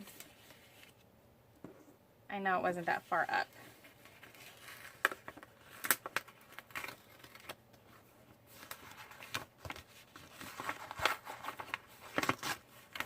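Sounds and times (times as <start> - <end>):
paper rustling and crinkling: 3.4 - 13.0.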